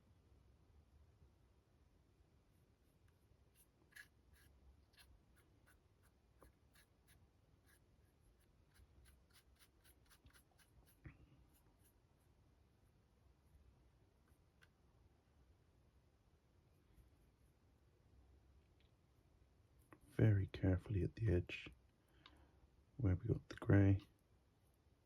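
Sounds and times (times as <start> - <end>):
paintbrush scratching: 2.5 - 13.0.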